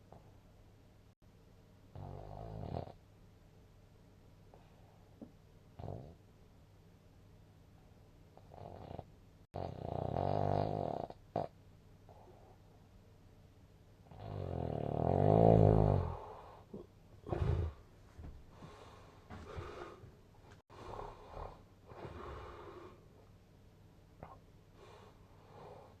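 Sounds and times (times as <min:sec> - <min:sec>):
person snoring: 0:14.1 - 0:17.8.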